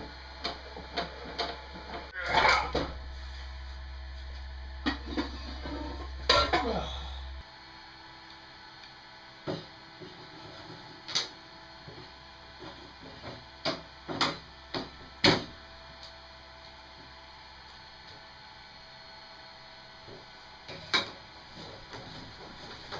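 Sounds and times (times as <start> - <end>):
low hum: 0.0 - 9.2.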